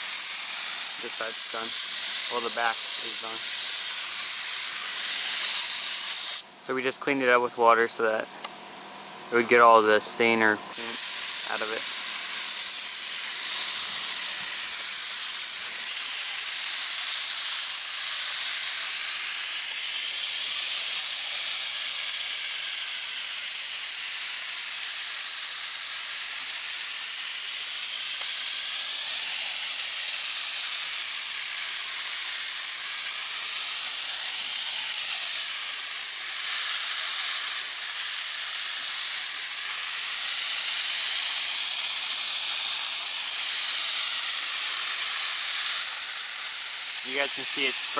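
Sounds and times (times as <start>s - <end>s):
paint spray gun hissing: 0.0s - 6.5s, 10.7s - 47.9s.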